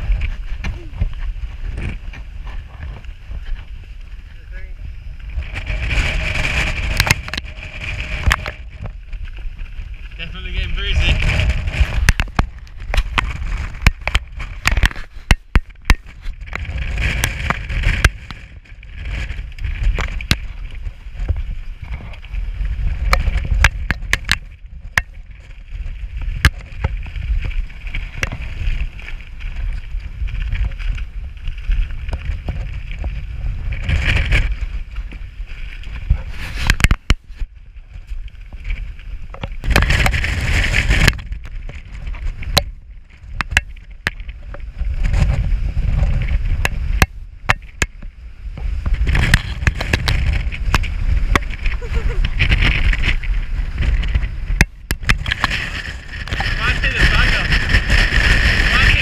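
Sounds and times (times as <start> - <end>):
wind buffeting microphone: 0.0 - 59.0
sharp clicks and knocks: 11.4 - 18.6, 39.3 - 45.4.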